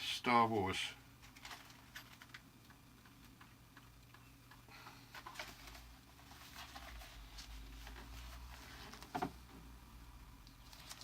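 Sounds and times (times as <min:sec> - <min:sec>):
packaging rustling and clicking: 0:01.2 - 0:02.4, 0:10.6 - 0:11.0.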